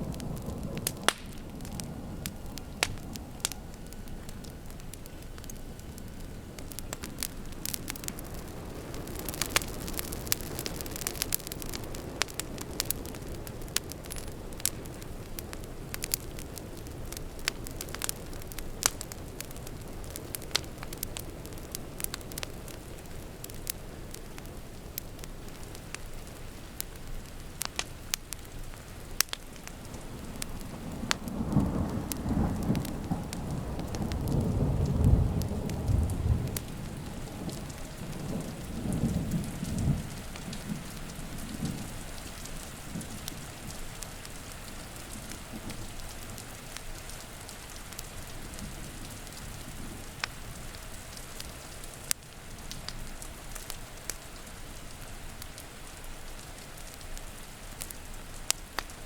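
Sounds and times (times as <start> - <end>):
thunder rumbling: 0.0 - 27.1, 29.6 - 46.7
steady rain: 0.0 - 59.0.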